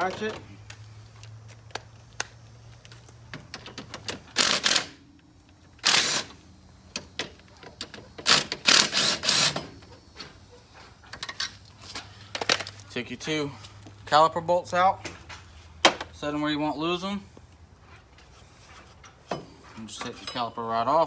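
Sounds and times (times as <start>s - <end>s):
ratchet clicking rapidly: 4.3s - 5.0s, 5.8s - 6.4s, 8.2s - 9.6s
light clicks and metal taps: 11.0s - 12.9s.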